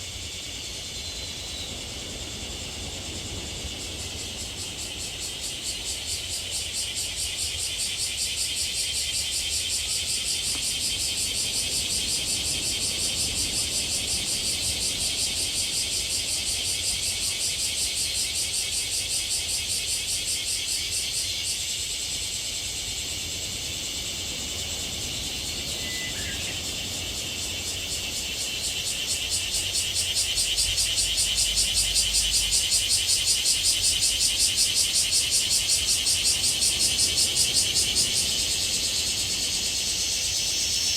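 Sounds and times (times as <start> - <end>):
cicadas buzzing in chorus: 0.0 - 40.9.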